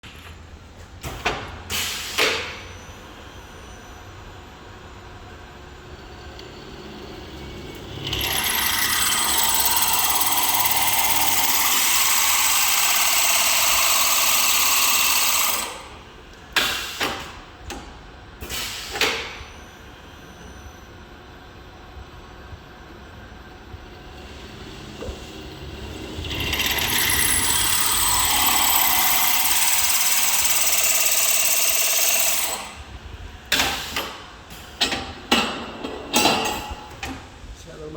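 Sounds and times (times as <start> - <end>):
pipe drilling machine grinding: 6.2 - 16.8, 23.8 - 33.0.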